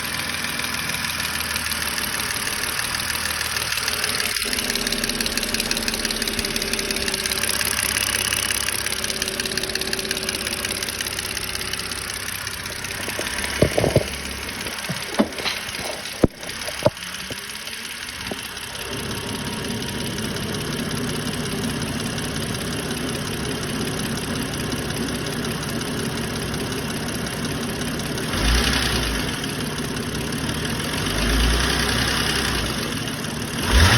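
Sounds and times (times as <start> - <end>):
car engine idling with ticking: 0.0 - 33.9
sharp engine knocks: 12.9 - 17.5.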